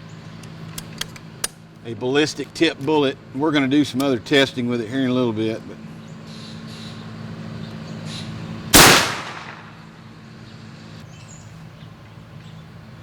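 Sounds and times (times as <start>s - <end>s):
air rifle shot: 8.8s - 9.8s.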